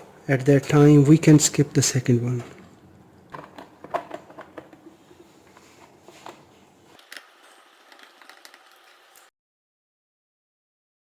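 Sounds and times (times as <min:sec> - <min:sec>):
small parts clicking and tapping: 0:07.0 - 0:09.3.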